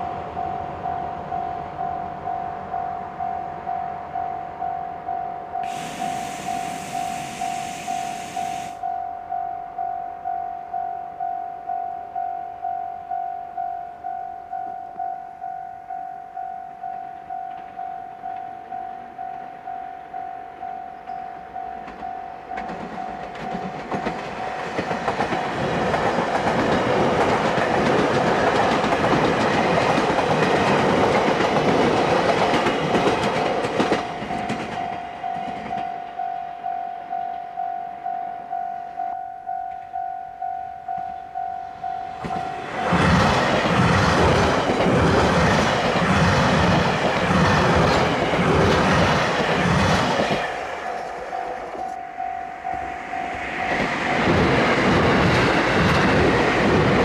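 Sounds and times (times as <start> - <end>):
level crossing warning bell: 0.0 - 29.2, 33.6 - 43.6, 49.0 - 56.3
train wheels clattering on rails: 21.8 - 36.2, 42.2 - 52.0, 52.7 - 57.0.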